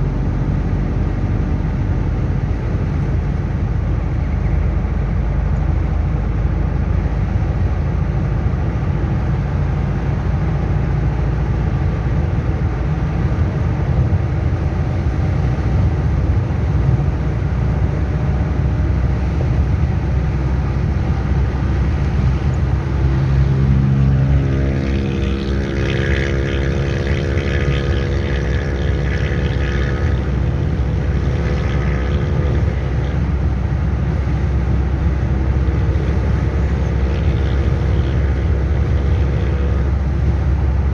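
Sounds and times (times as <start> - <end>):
diesel engine running: 0.0 - 40.9
multi-tone turbo whine: 0.0 - 40.9.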